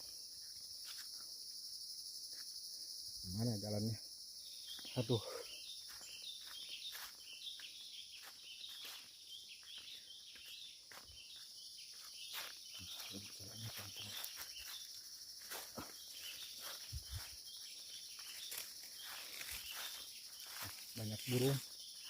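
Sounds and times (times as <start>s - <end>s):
footsteps on forest floor: 0.0s - 1.2s, 4.6s - 22.0s
insects droning: 0.0s - 22.0s
short chirping calls: 15.7s - 22.0s.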